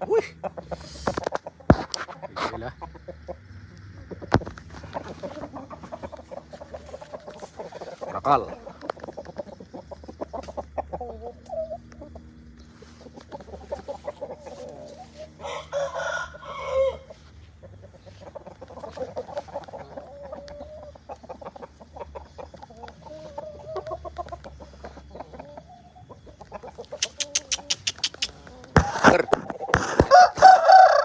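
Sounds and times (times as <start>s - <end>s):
chickens clucking: 0.0s - 31.0s
rooster crowing: 15.2s - 17.3s, 30.0s - 31.0s
quick sharp ticks: 26.9s - 28.5s.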